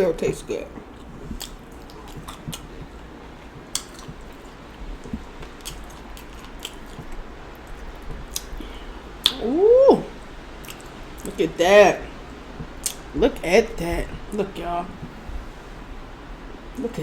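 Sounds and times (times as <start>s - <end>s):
wet chewing and mouth smacks: 0.2s - 9.5s, 10.2s - 11.4s, 12.0s - 13.5s.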